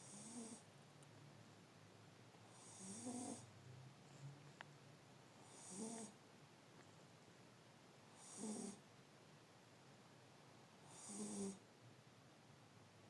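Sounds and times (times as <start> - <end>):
pet snoring faintly: 0.0 - 0.7, 2.5 - 3.5, 5.4 - 6.2, 8.1 - 8.8, 10.8 - 11.6.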